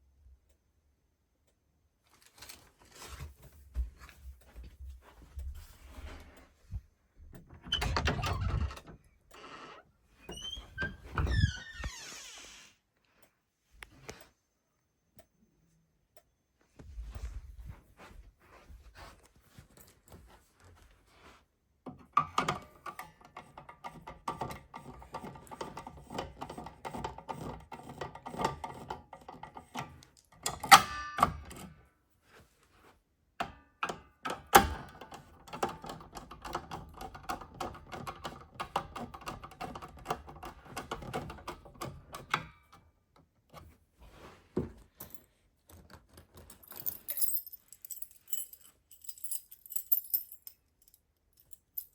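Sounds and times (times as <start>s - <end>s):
irregular clicking and rattling: 44.8s - 51.9s.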